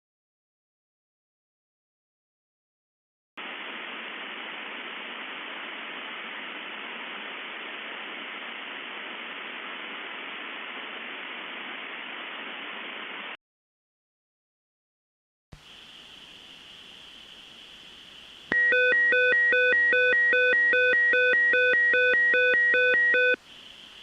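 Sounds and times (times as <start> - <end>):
steady static hiss: 3.4 - 13.4, 15.6 - 24.0.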